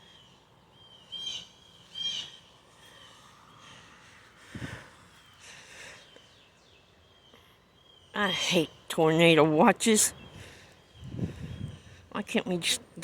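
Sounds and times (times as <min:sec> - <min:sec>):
bird chirping: 0:00.0 - 0:03.8, 0:05.1 - 0:12.5.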